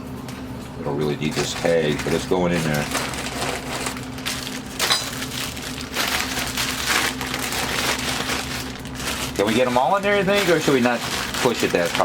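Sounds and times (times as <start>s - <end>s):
plastic bag crinkling: 1.2s - 12.0s.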